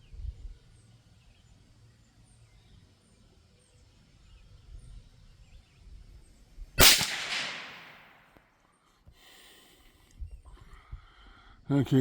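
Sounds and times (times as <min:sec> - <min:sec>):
rifle shot with echo: 0:06.8 - 0:08.3.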